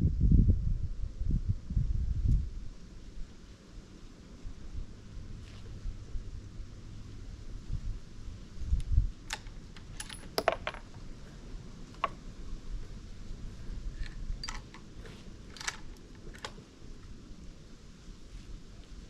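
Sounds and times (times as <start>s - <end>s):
light metallic clicks and clinks: 9.3s - 11.2s, 13.9s - 16.6s.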